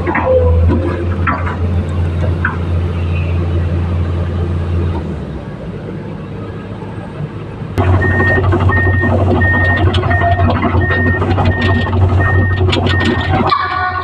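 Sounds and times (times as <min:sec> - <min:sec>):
excavator diesel engine running: 0:00.0 - 0:14.0
warning alarm beeping: 0:07.8 - 0:14.0.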